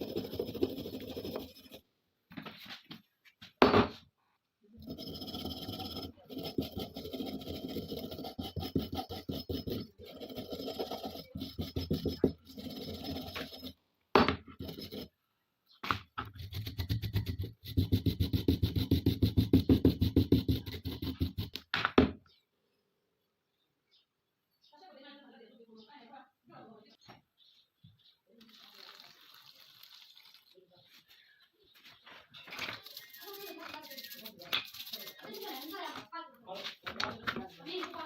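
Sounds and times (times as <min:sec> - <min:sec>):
abrasive scrubbing on metal part: 0:00.0 - 0:01.8, 0:04.8 - 0:13.8, 0:14.5 - 0:15.1, 0:32.6 - 0:36.0.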